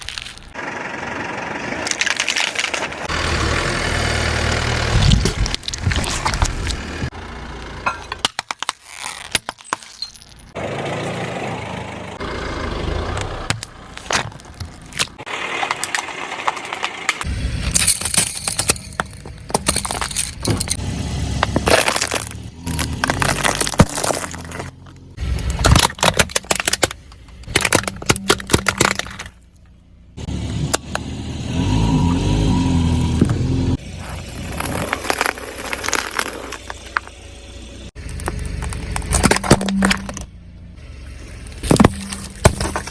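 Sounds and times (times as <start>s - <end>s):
low car rumble: 0.0s - 8.3s, 10.1s - 42.9s
tyre crushing cans and bottles: 4.9s - 7.1s, 7.8s - 10.6s, 13.5s - 20.8s, 21.4s - 29.7s, 33.1s - 37.2s, 37.9s - 40.4s, 41.5s - 42.9s.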